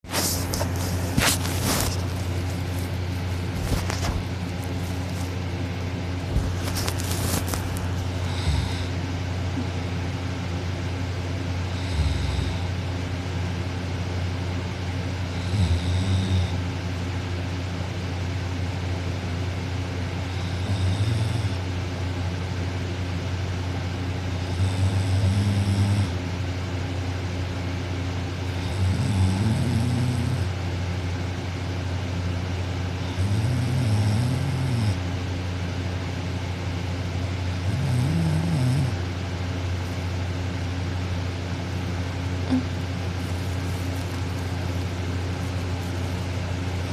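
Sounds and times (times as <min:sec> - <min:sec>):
steady low hum: 0:00.0 - 0:46.9
woman snoring: 0:06.8 - 0:09.0, 0:11.7 - 0:12.8, 0:15.3 - 0:16.6, 0:20.3 - 0:21.6, 0:24.4 - 0:26.2, 0:28.5 - 0:30.5, 0:33.1 - 0:35.0, 0:37.6 - 0:39.0, 0:42.4 - 0:42.9.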